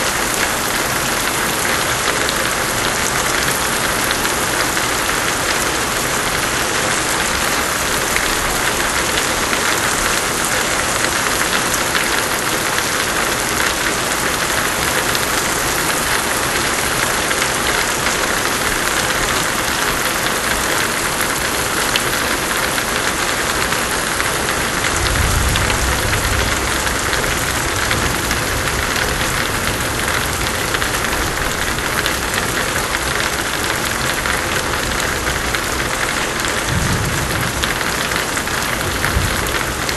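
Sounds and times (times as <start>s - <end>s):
heavy rain pouring: 0.0s - 39.9s
distant thunder rumble: 24.9s - 31.9s, 36.4s - 39.9s.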